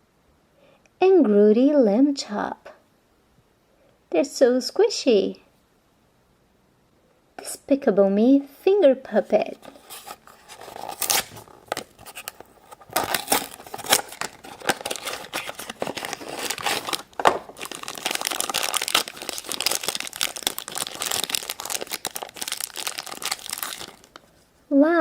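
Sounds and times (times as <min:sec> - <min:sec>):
crinkly wrapper crumpled and torn: 0:09.5 - 0:24.4.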